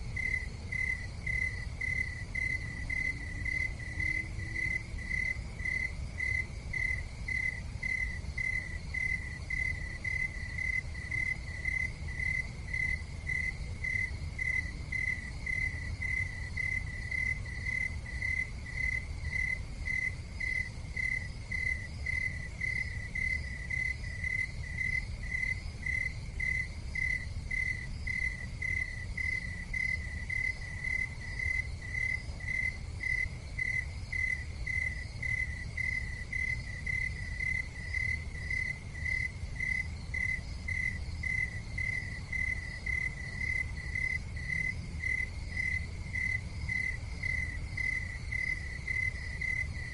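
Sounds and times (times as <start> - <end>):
cricket chirping: 0.0 - 49.9.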